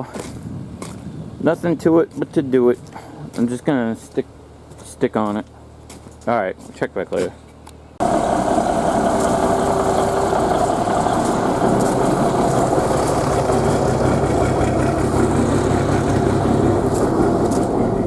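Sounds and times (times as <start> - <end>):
diesel truck engine idling: 8.0 - 18.0.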